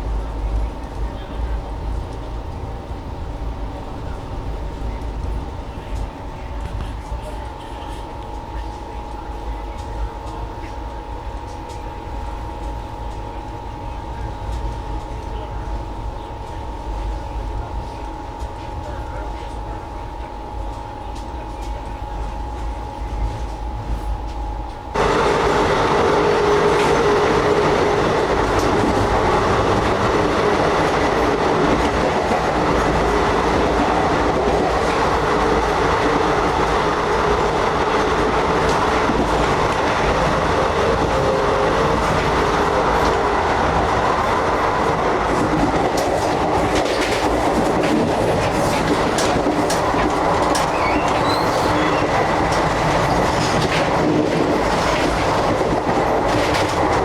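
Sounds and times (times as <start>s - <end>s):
train rumble and hiss: 0.0s - 57.0s
train wheel clicks: 24.7s - 57.0s.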